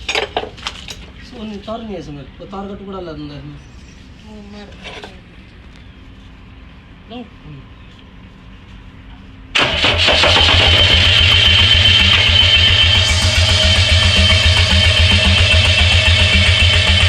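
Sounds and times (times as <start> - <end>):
diesel engine starting and running: 9.5 - 17.0.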